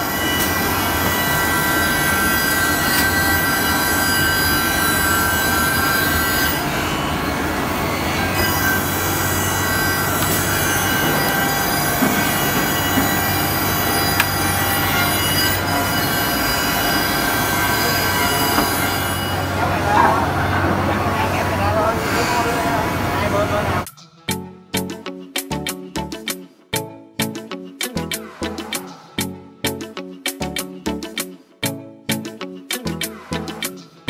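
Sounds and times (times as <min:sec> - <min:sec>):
woodworking machine humming and whining: 0:00.0 - 0:23.8.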